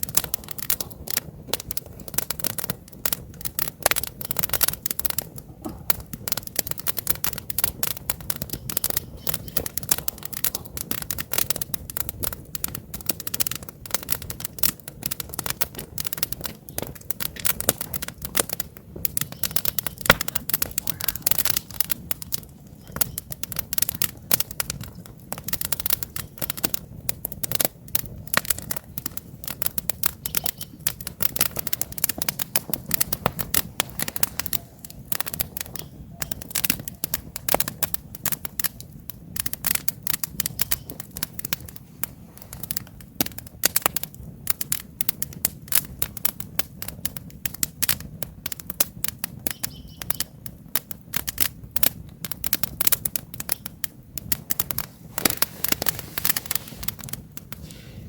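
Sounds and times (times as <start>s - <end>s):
campfire crackling: 0.0s - 58.0s
loud fire pop: 12.6s - 38.5s.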